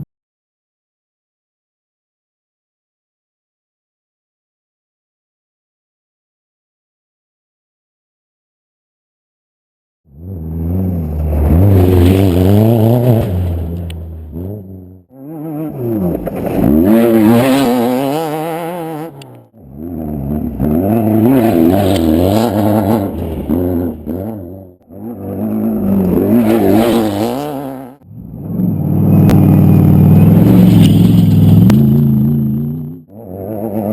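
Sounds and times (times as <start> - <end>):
off-road vehicles passing: 10.1 - 33.9.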